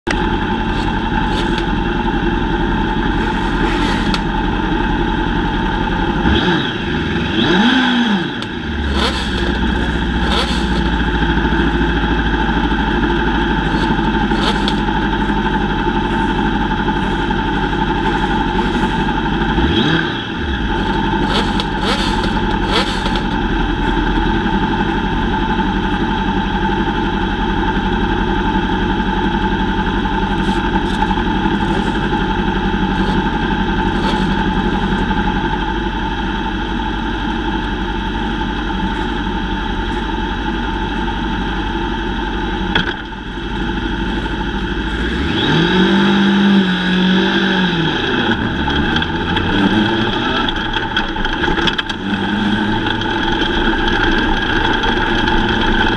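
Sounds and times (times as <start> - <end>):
race car engines droning: 0.1 - 55.9
nearby engine revving: 0.6 - 1.7, 3.1 - 4.4, 6.2 - 11.8, 13.4 - 23.4, 30.2 - 35.4, 44.9 - 50.9.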